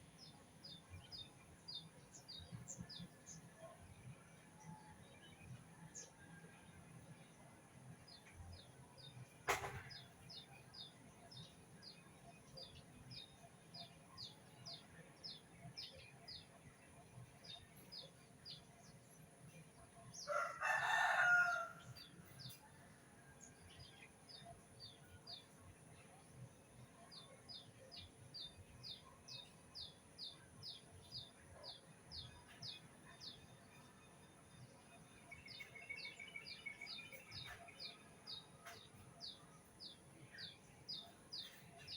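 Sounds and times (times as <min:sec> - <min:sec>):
rooster crowing: 0:20.3 - 0:21.8.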